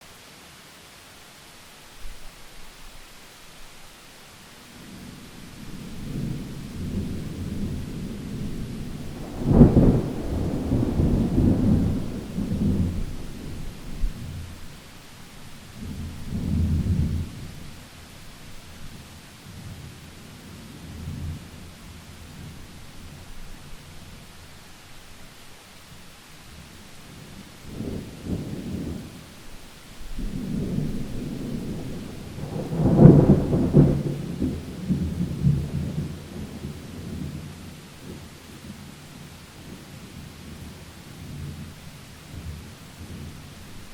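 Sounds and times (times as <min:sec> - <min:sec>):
steady rain: 0:00.0 - 0:43.9
thunder rumble: 0:04.9 - 0:14.8, 0:15.8 - 0:17.8, 0:30.0 - 0:38.7
loud thunder clap: 0:05.9 - 0:14.3, 0:30.2 - 0:36.0.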